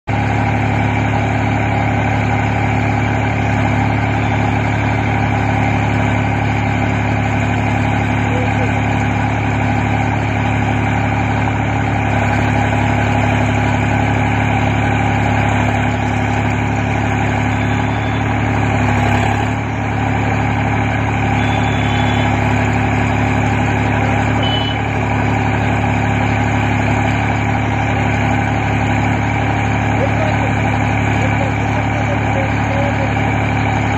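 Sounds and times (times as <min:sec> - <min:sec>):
tractor diesel engine running: 0:00.0 - 0:33.9.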